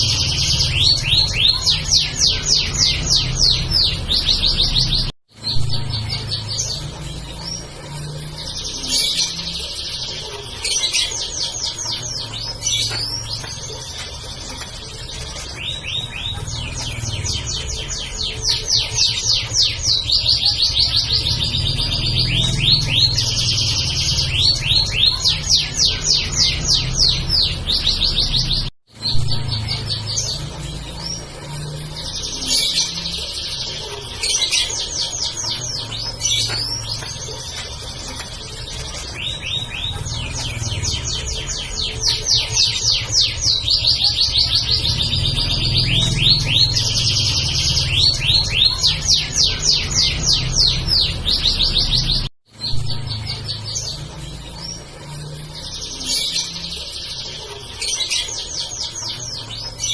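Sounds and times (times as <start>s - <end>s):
canary singing trills: 0.0s - 59.9s.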